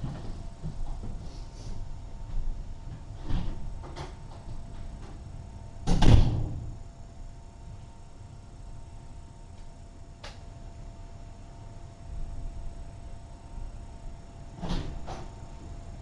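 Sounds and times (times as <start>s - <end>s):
door shutting with a thud: 3.2s - 4.5s, 5.8s - 6.8s, 14.6s - 15.4s.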